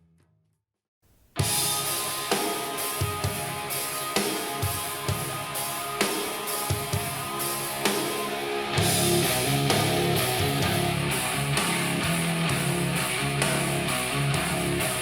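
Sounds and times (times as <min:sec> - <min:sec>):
rock music through computer speakers: 0:01.4 - 0:15.0.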